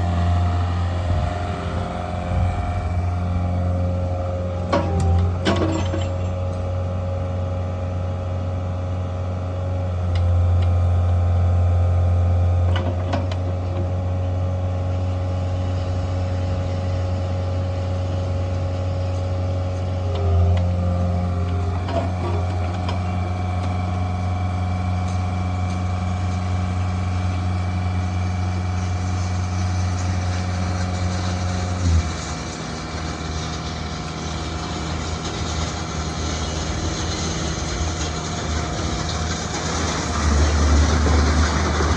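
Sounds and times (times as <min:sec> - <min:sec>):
mini excavator diesel engine: 0:00.0 - 0:41.9
machine clanks: 0:04.7 - 0:06.6.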